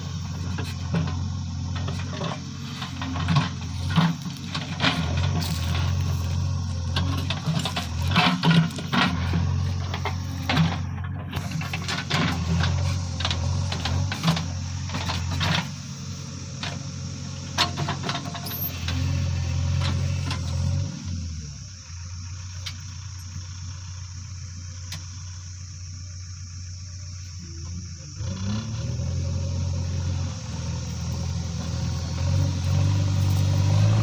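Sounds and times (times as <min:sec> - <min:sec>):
diesel engine droning: 0:00.0 - 0:34.0
metal clanks and knocks: 0:00.4 - 0:06.2, 0:06.8 - 0:15.8, 0:17.5 - 0:19.0.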